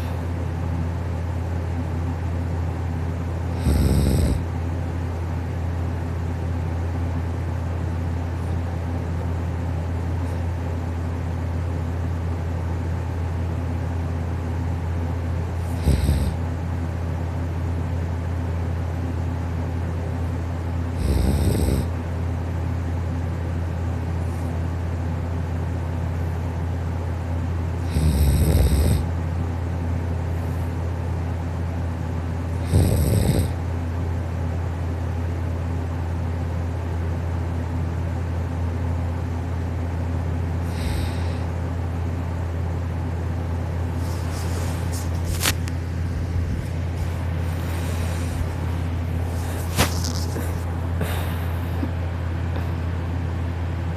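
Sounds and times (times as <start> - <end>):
steady low hum: 0.0 - 53.9
person snoring softly: 3.5 - 4.5, 15.6 - 16.4, 20.9 - 22.0, 27.8 - 29.1, 32.6 - 33.6, 40.6 - 41.6, 47.0 - 51.7.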